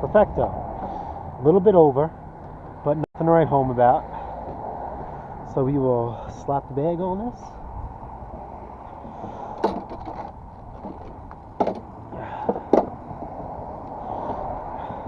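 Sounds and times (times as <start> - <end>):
plastic and metal knocks: 9.6 - 13.0.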